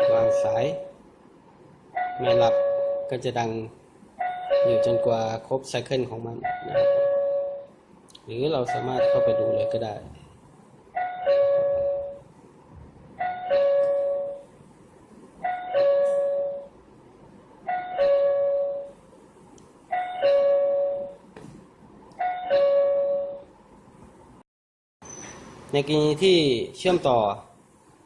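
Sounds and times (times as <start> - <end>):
doorbell ding-dong chime: 0.0 - 0.7, 2.0 - 3.2, 4.2 - 5.3, 6.5 - 7.7, 8.7 - 9.9, 11.0 - 12.2, 13.2 - 14.5, 15.4 - 16.7, 17.7 - 18.9, 19.9 - 21.2, 22.2 - 23.5.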